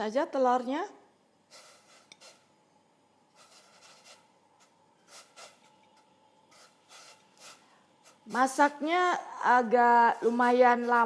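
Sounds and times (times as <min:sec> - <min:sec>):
faint rubbing and scraping: 0:03.3 - 0:09.4.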